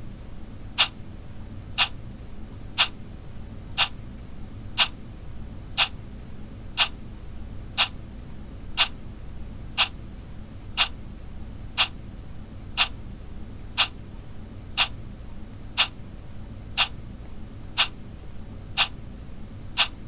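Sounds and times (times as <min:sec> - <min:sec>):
wall clock ticking: 0:00.8 - 0:01.0, 0:01.8 - 0:02.0, 0:02.8 - 0:03.0, 0:03.8 - 0:04.0, 0:04.8 - 0:05.0, 0:05.8 - 0:06.0, 0:06.8 - 0:07.0, 0:07.8 - 0:08.0, 0:08.7 - 0:09.0, 0:09.8 - 0:10.0, 0:10.6 - 0:11.0, 0:11.8 - 0:12.0, 0:12.7 - 0:13.0, 0:13.7 - 0:14.0, 0:14.8 - 0:15.0, 0:15.8 - 0:16.0, 0:16.8 - 0:17.0, 0:17.8 - 0:18.0, 0:18.8 - 0:19.0, 0:19.8 - 0:20.0.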